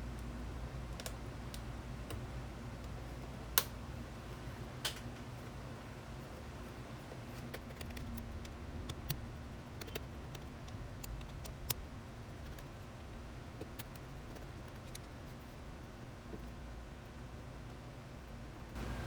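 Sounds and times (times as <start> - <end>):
low steady hum: 0.0 - 19.0
keyboard parts clicking and tapping: 7.5 - 12.8.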